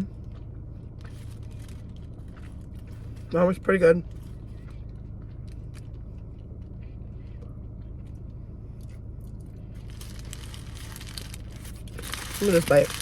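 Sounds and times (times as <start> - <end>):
steady low hum: 0.0 - 13.0
rustling: 9.8 - 13.0.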